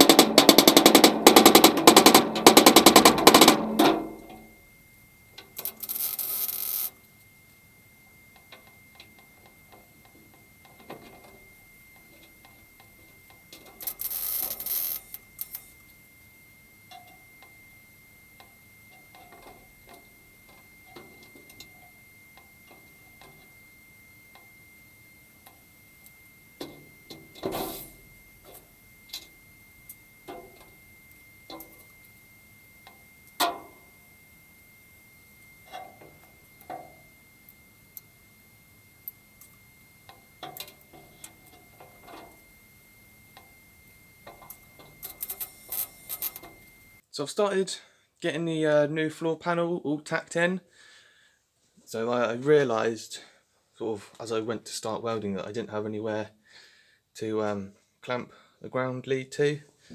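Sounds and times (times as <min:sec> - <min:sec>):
clicks and knocks: 0:00.0 - 0:04.4
welding crackle: 0:00.0 - 0:04.6, 0:05.3 - 0:47.0.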